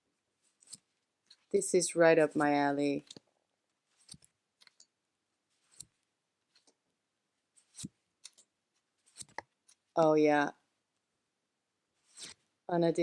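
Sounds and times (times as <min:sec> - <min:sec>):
cards clicking and tapping: 0:09.1 - 0:09.5.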